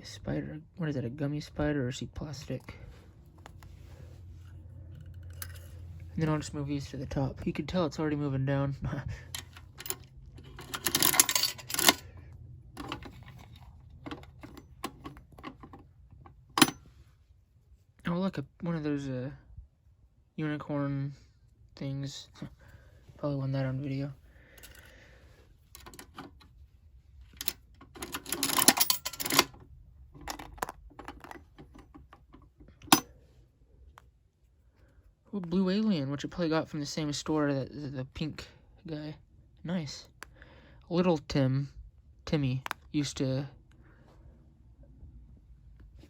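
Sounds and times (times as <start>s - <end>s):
vending machine rattling clatter: 9.4s - 12.1s, 27.5s - 29.6s.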